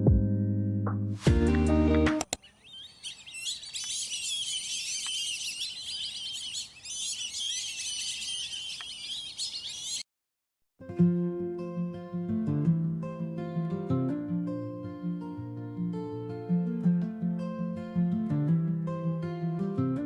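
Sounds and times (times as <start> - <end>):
small birds chirping: 2.2 - 10.1.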